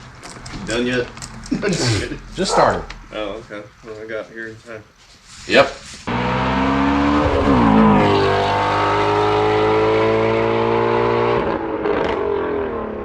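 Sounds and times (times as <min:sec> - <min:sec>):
car engine revving: 0:06.1 - 0:13.0.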